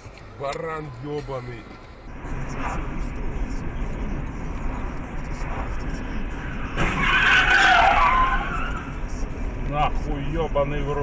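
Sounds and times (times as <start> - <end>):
car road noise: 0.0 - 11.0
tyre squeal: 6.5 - 8.9.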